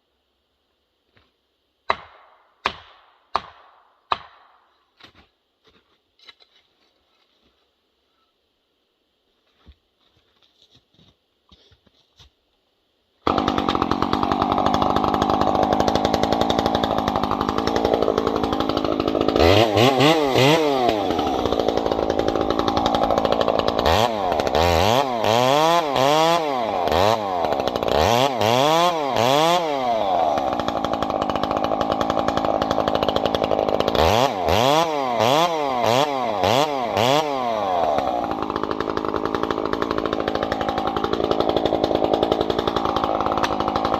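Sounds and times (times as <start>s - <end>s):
chainsaw cutting tree: 13.2s - 43.9s.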